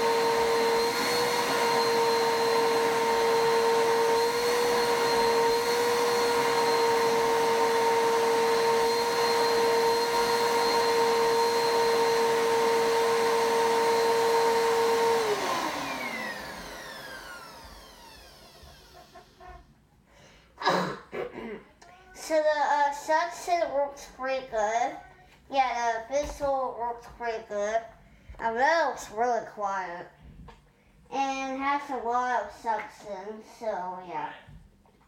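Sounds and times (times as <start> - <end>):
vacuum cleaner motor whining: 0.0 - 19.7.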